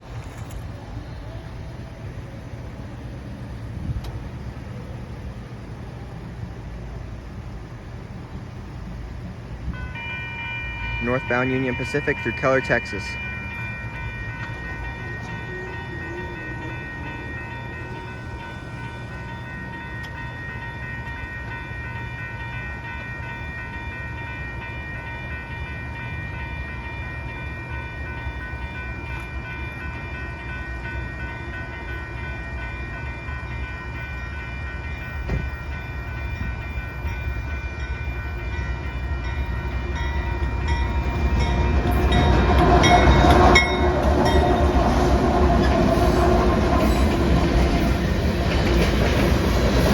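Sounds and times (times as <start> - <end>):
locomotive rumble: 0.0 - 49.9
steady high tones: 9.7 - 48.6.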